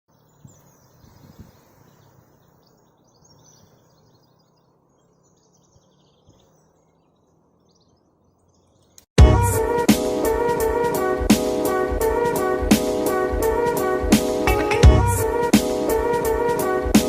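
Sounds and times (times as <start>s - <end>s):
small birds chirping: 0.1s - 9.2s.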